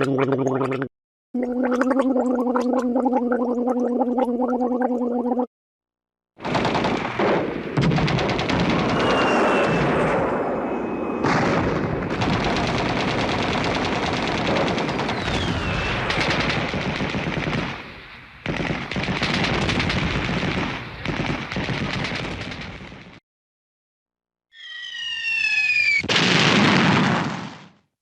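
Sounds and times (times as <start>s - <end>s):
rapid machine-gun fire: 6.4s - 10.6s, 11.2s - 23.2s.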